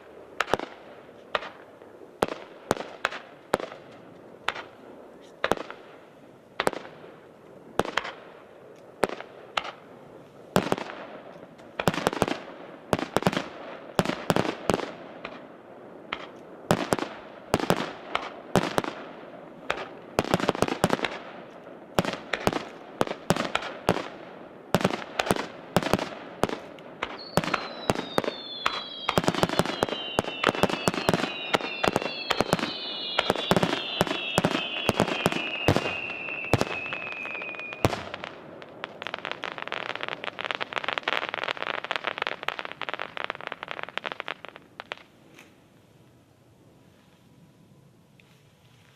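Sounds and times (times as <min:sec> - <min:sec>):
firework crackle: 0:00.0 - 0:45.6
descending firework whistles: 0:27.0 - 0:38.4.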